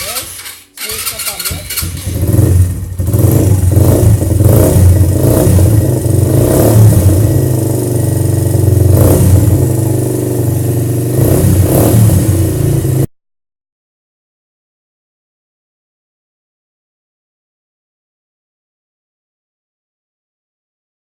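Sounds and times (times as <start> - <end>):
motorcycle engine running loudly: 0.2 - 13.1.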